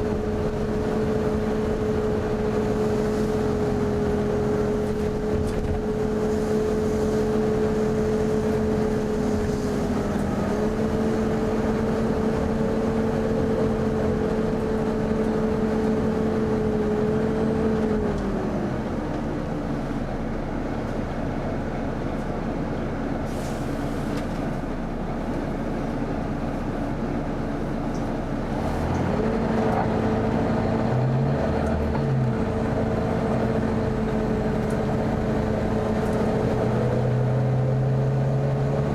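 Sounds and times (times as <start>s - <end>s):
bus engine idling: 0.0s - 38.9s.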